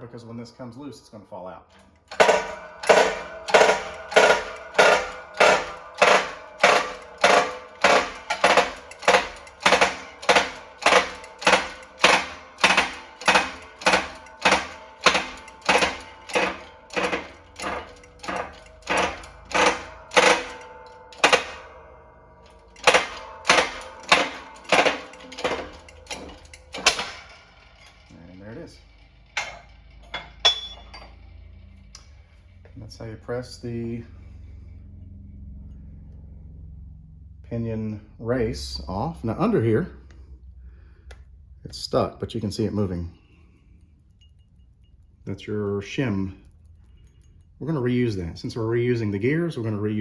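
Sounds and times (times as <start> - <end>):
shop press metallic clack: 1.7 - 28.3, 29.4 - 31.2.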